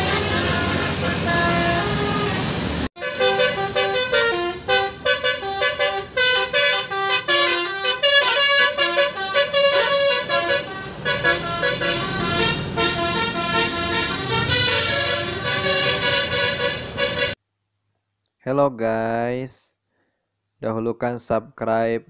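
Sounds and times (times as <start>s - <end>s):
musical air horn melody: 0.0s - 17.4s.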